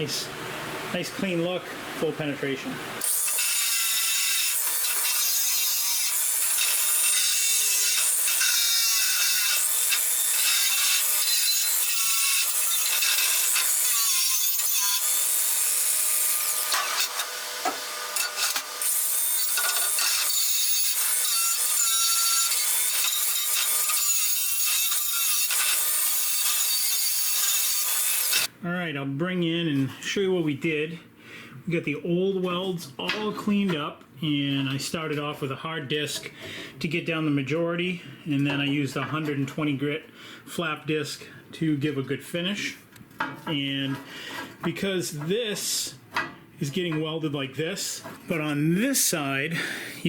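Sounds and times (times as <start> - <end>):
angle grinder grinding metal: 3.0 - 28.5.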